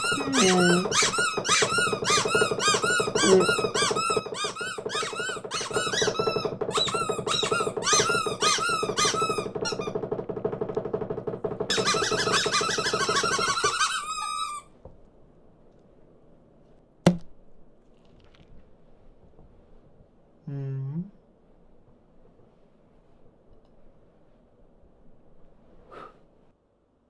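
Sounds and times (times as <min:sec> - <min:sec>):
cartoon birds chirping: 0:00.0 - 0:01.6.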